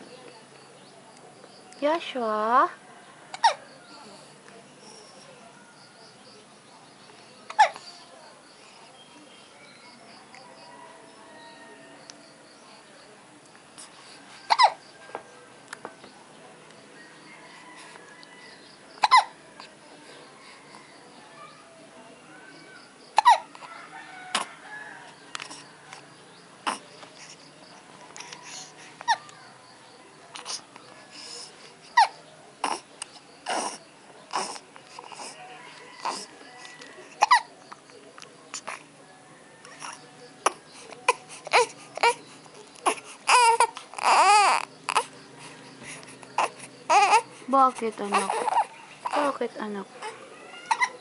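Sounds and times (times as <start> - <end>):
baby hiccuping: 3.3 - 3.6, 7.5 - 7.8, 14.5 - 14.8, 19.0 - 19.4, 23.2 - 23.5, 26.6 - 26.9, 32.0 - 35.3, 37.2 - 37.5, 39.8 - 42.2, 42.8 - 45.1, 50.7 - 51.0
baby crying: 33.5 - 35.4, 36.0 - 36.3, 39.8 - 42.2, 42.8 - 45.1, 46.4 - 47.3, 48.1 - 49.3, 50.0 - 51.0.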